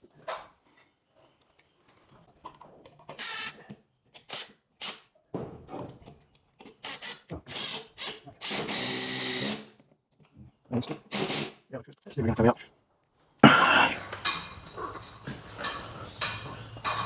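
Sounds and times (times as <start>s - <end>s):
tools scraping and rubbing: 13.7s - 17.0s.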